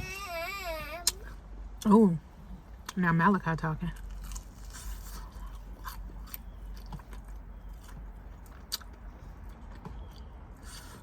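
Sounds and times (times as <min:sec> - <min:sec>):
person chewing crunchy food: 0:04.0 - 0:11.0.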